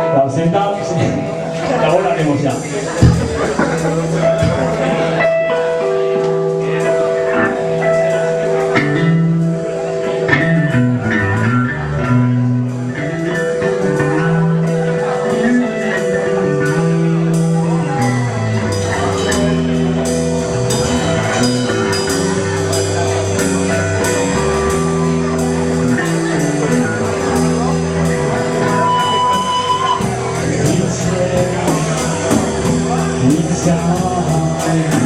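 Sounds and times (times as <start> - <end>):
bass line: 1.0 - 4.8
drums hitting: 1.0 - 4.8.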